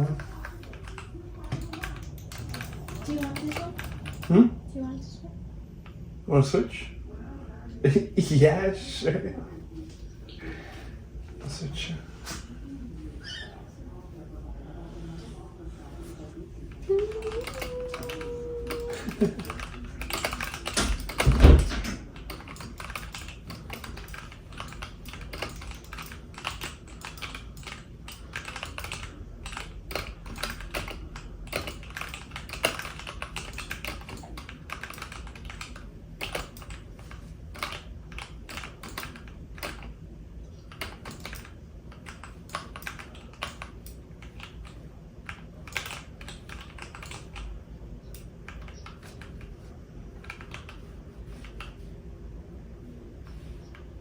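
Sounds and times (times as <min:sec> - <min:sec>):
keyboard keys clicking: 0:00.1 - 0:04.4, 0:17.0 - 0:40.0, 0:40.6 - 0:47.5, 0:48.1 - 0:51.8.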